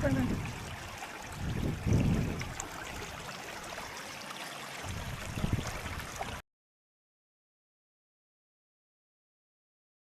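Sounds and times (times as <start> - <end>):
wind on microphone: 0.0 - 3.2, 4.8 - 6.4
running water rushing: 0.0 - 6.4.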